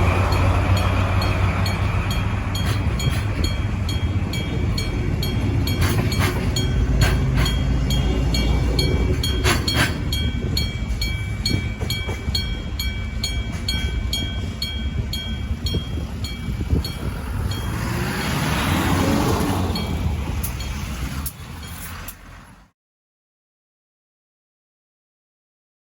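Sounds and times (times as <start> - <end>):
railway wagons rumbling past: 0.0 - 22.7
level crossing bell striking: 0.3 - 17.9.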